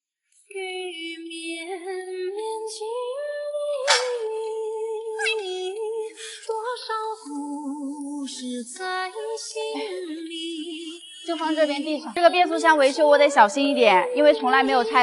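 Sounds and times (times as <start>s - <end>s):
woman singing slow melody: 0.5s - 15.0s
sharp knock: 3.9s - 4.3s.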